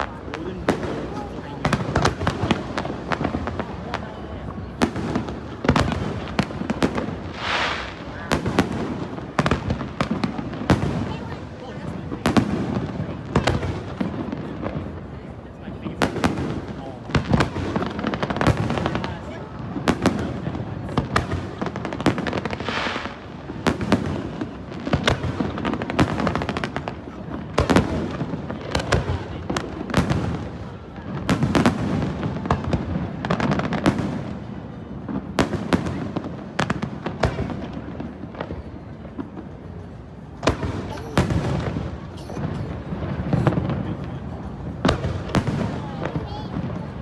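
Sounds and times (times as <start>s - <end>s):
firework bangs and crackling: 0.0s - 47.0s.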